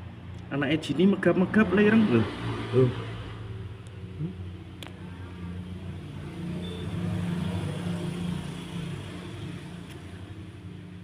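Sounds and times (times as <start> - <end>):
vehicle engine hum: 0.0 - 11.0.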